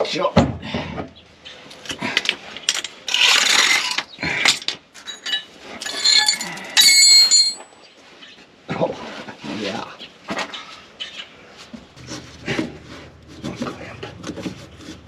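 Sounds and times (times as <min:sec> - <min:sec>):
rough scraping: 0:02.0 - 0:07.6
metal tools clicking and knocking: 0:02.6 - 0:07.7
ringing metallic clinks: 0:05.0 - 0:07.8.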